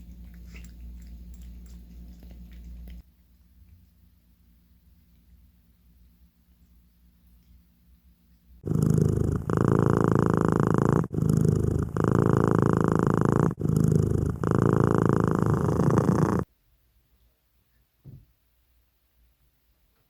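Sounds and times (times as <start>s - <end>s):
cat purring: 0.0s - 3.0s, 8.6s - 16.5s.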